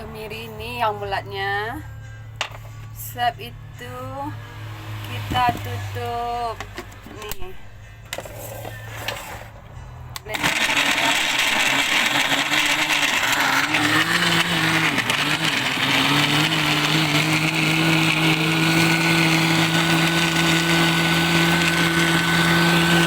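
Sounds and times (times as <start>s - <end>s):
electric blender running: 10.3s - 23.0s.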